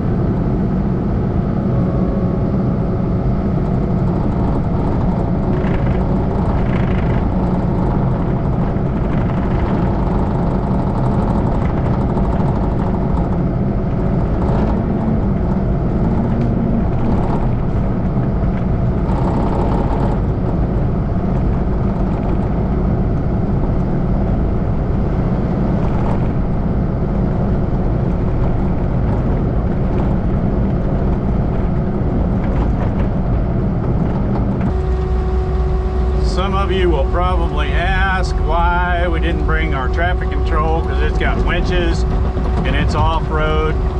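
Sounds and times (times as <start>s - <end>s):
heavy diesel engine running: 0.0s - 43.9s.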